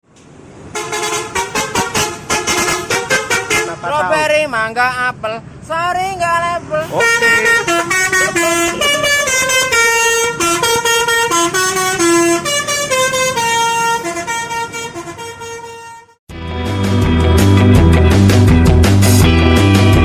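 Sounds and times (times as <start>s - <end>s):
bus multi-tone air horn tune: 0.6s - 4.0s, 6.8s - 16.2s
loud rock music: 16.3s - 20.0s.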